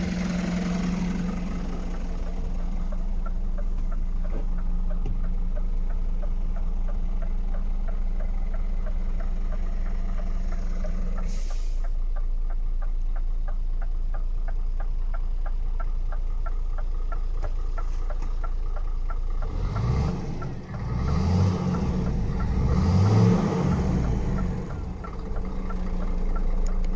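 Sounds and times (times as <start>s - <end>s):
truck diesel engine idling and revving: 0.0s - 26.9s
short hiss: 11.3s - 11.9s.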